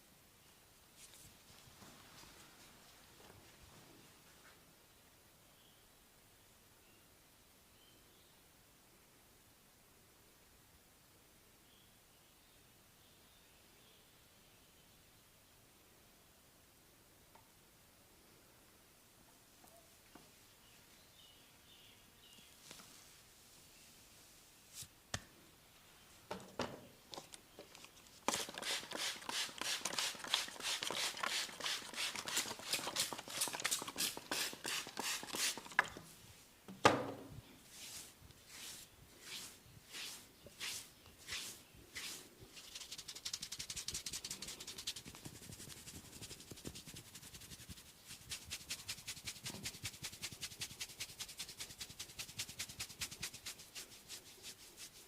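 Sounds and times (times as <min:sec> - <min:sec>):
hands rubbing skin: 0:27.2 - 0:36.0, 0:37.7 - 0:55.0
fast tapping on skin: 0:42.8 - 0:53.9.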